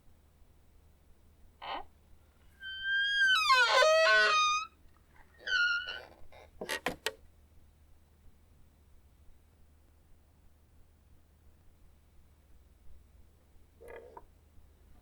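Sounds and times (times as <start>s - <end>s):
creaky door hinge squealing: 2.6s - 4.7s, 5.4s - 6.1s.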